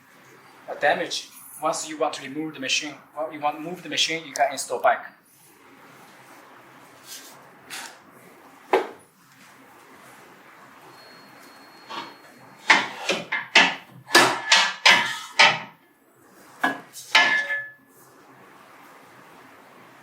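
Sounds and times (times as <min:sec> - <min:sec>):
knocks and metallic clinks: 0:17.2 - 0:17.8.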